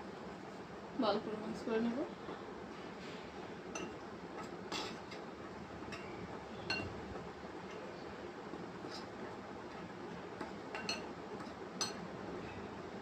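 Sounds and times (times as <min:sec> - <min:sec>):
utensil clinking against bowl: 0:03.7 - 0:05.3, 0:05.9 - 0:07.0, 0:09.7 - 0:12.1.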